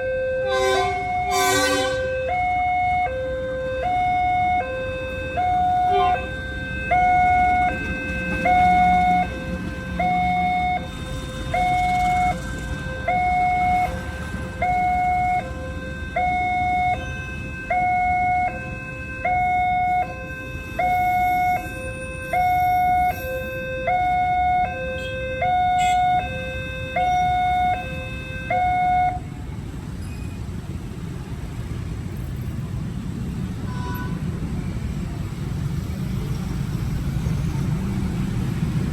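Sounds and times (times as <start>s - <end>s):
two-tone warning siren: 0.0s - 29.4s.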